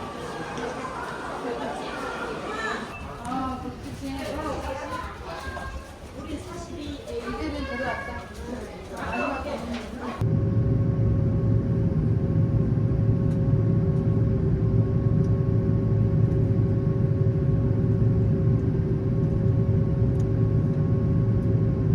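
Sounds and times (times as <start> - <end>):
airliner cabin drone: 10.2 - 21.9.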